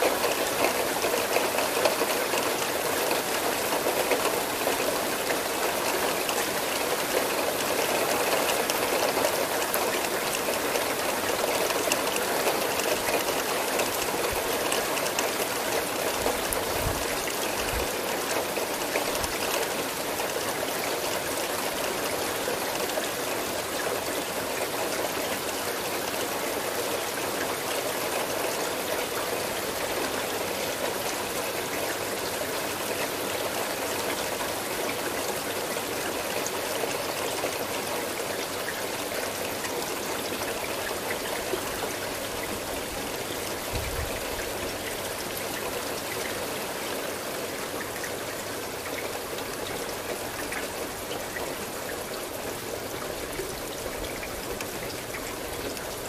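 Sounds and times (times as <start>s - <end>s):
steady rain: 0.0s - 56.0s
water trickling: 35.9s - 56.0s.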